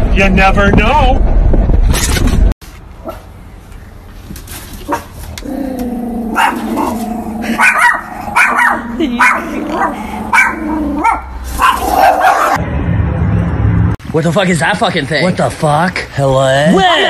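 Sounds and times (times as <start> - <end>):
dog barking: 6.3 - 7.0, 7.6 - 12.6.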